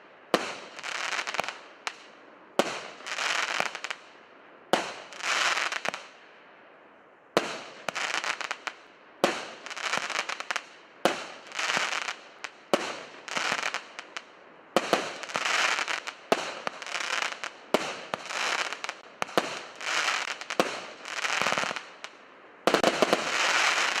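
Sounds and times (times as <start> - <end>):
crackling firework stars: 0.0 - 24.0.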